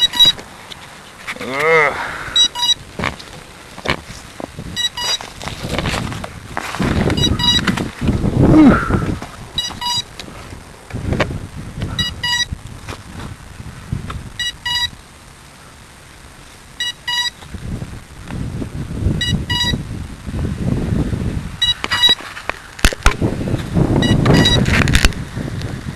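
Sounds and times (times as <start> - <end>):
electronic beeper double beeps: 0.0 - 0.4, 2.3 - 2.8, 4.8 - 5.2, 7.2 - 7.7, 9.6 - 10.1, 12.0 - 12.5, 14.4 - 15.0, 16.8 - 17.4, 19.2 - 19.8, 21.6 - 22.2, 24.0 - 24.7
wind buffeting microphone: 2.1 - 14.6, 17.4 - 22.2, 22.8 - 25.9.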